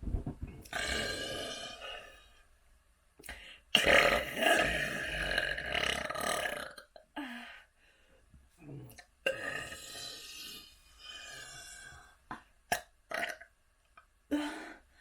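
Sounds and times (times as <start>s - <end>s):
person burping: 0.6s - 2.1s, 3.8s - 7.0s, 8.9s - 10.6s, 12.3s - 13.5s.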